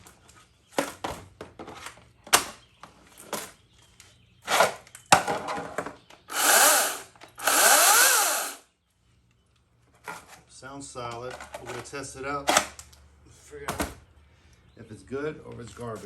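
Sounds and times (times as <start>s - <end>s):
chainsaw whirring: 6.3s - 8.6s.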